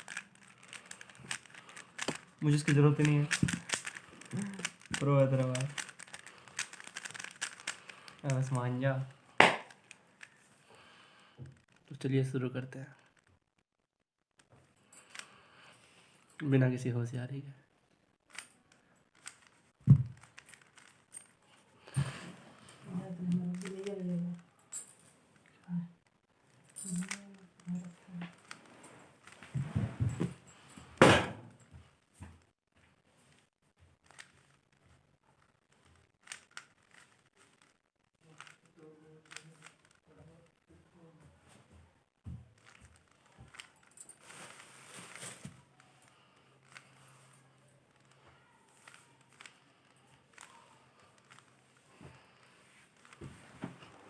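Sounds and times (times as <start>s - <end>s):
puzzle cube clicking: 0.0s - 8.6s, 9.4s - 10.0s, 23.4s - 24.0s, 38.4s - 39.9s
puzzle cube clicking and clattering: 0.0s - 10.4s, 19.1s - 21.3s, 21.9s - 24.2s, 26.7s - 29.6s, 34.0s - 34.8s, 35.7s - 40.6s, 42.6s - 47.2s, 47.9s - 54.0s.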